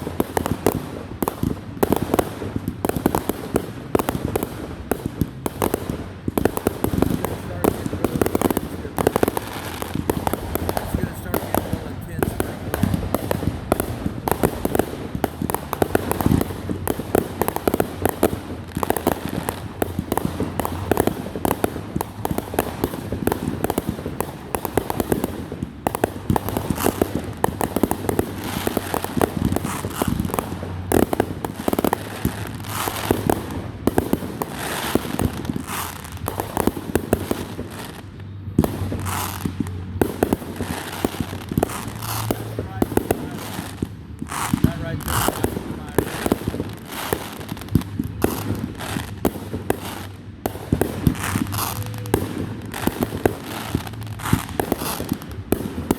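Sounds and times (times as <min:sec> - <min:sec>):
fireworks bangs and crackles: 0:00.0 - 0:55.9.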